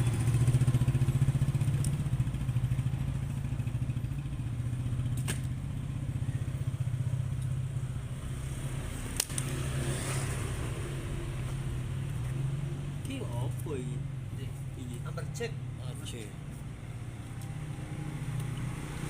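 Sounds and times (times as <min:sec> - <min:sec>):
small engine idling: 0:00.0 - 0:08.0.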